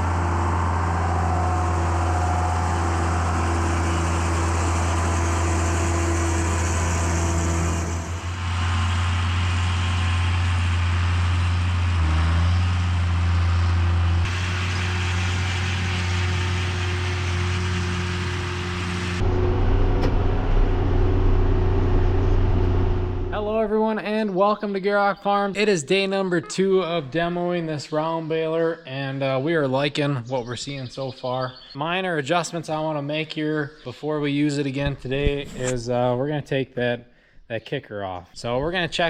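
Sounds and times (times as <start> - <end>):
tractor engine running: 0.0 - 23.6.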